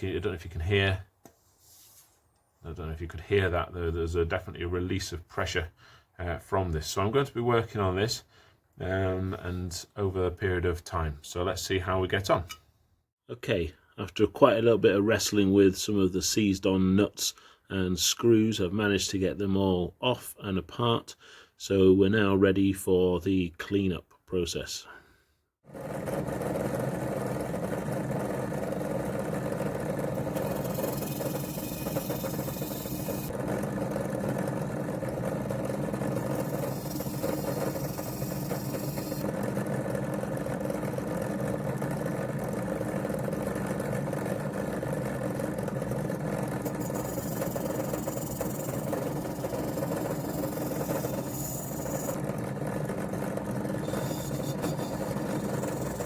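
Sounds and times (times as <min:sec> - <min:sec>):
electric motor running: 0:30.2 - 0:33.4, 0:35.7 - 0:39.3, 0:46.6 - 0:52.2, 0:53.7 - 0:56.0.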